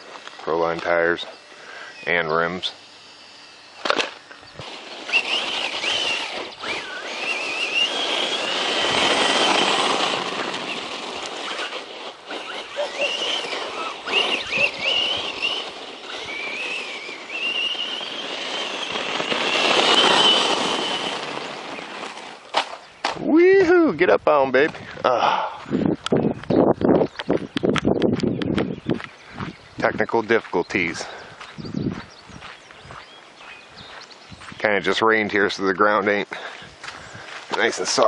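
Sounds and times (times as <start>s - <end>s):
electric motor whining: 0.0s - 23.3s
tyres rushing on ground: 3.8s - 24.0s.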